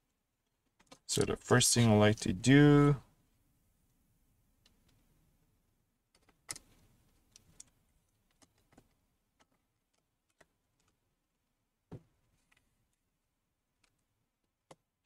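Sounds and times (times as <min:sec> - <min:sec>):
small plastic parts clicking: 0:00.4 - 0:01.1, 0:06.1 - 0:11.0, 0:13.8 - 0:15.0.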